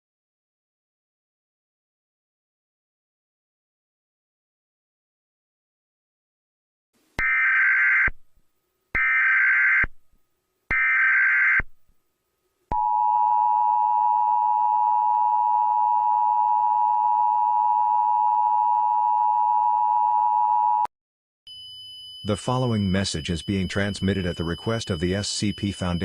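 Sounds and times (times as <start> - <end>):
screeching digital data tones: 21.5 - 26.0
two-tone attention signal: 21.5 - 26.0.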